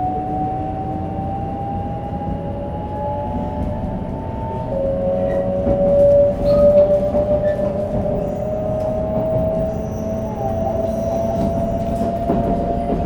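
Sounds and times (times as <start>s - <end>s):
wheels rumbling on rail: 0.0s - 13.0s
rail clicks: 5.2s - 13.0s.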